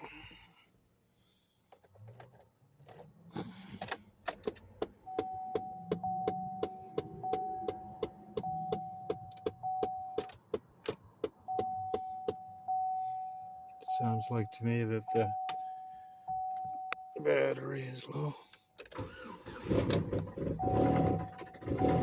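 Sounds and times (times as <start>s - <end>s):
car starter clicking: 18.8s - 22.0s.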